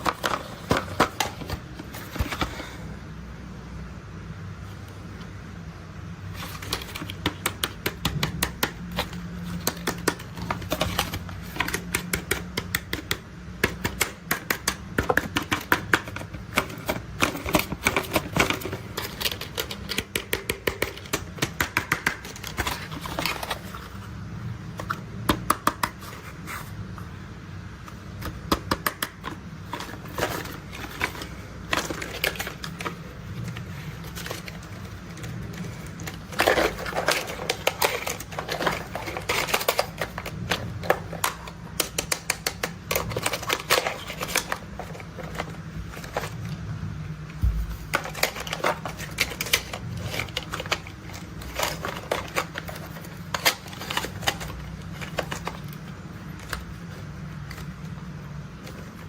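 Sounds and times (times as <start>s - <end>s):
tapping on toy vehicles: 6.6s - 23.6s, 24.8s - 26.0s, 28.2s - 32.9s
steady low hum: 44.4s - 53.3s.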